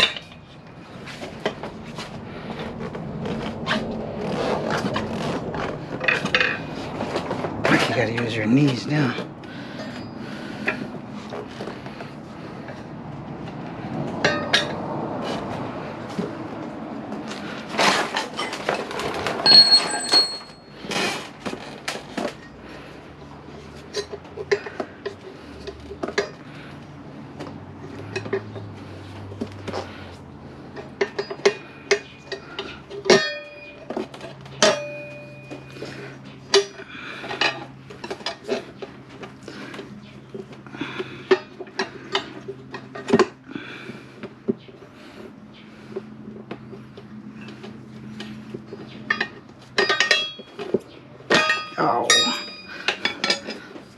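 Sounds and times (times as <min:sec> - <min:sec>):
tire levers clinking on wheel rim: 0:00.0 - 0:12.0, 0:14.2 - 0:14.8, 0:17.3 - 0:22.6, 0:30.7 - 0:44.7, 0:45.9 - 0:53.9
tire scraping and rubbing: 0:00.0 - 0:53.9.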